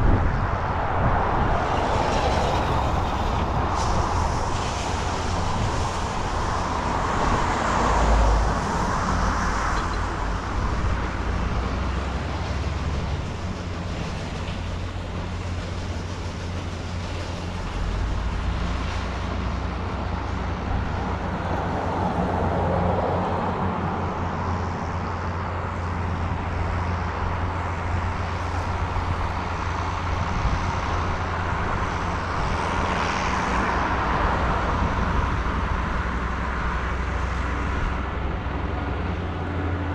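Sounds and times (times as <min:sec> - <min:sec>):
machinery engine droning: 0:00.0 - 0:39.9
rushing noise: 0:00.0 - 0:39.9.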